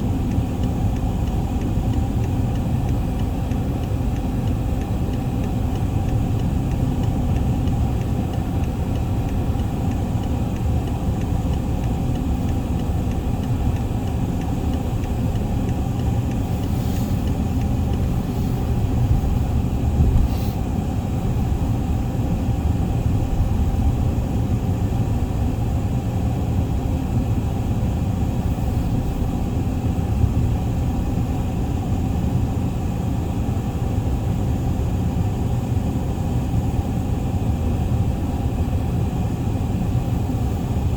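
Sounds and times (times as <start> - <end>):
low rumble: 11.2 - 21.6.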